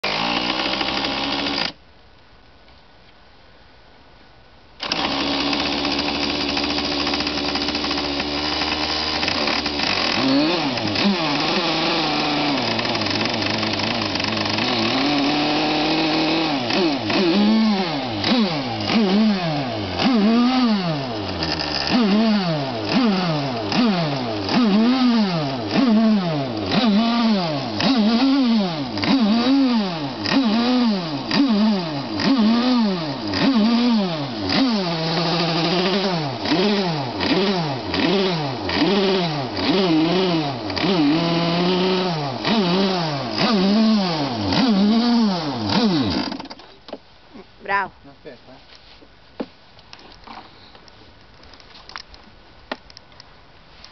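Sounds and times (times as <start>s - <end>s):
small model engine revving: 0.0s - 1.8s, 4.8s - 46.6s.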